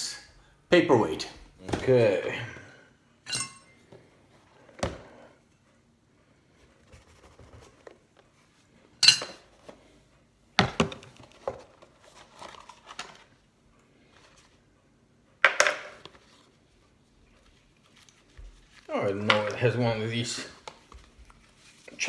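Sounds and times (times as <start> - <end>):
packaging rustling: 11.0 - 13.4.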